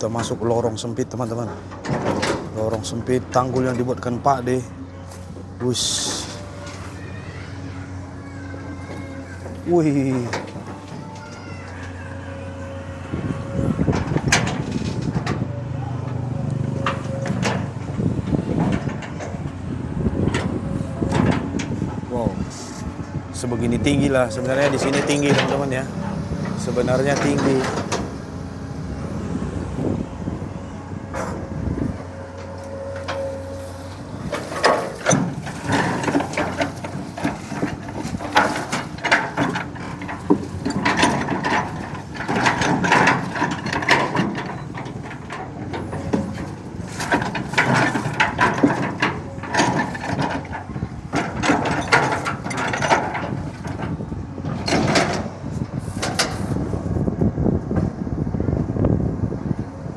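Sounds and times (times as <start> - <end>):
excavator engine hum: 0.0 - 59.9
clicks and knocks: 34.2 - 55.4.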